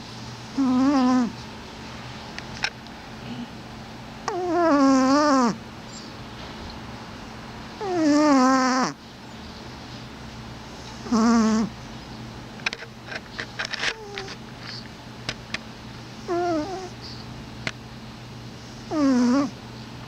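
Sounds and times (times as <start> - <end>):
pet snoring with moans: 0.5 - 1.4, 4.2 - 5.6, 7.8 - 9.0, 10.8 - 11.8, 13.9 - 14.8, 16.2 - 17.0, 18.7 - 19.6
clicks and snuffles: 12.6 - 15.7.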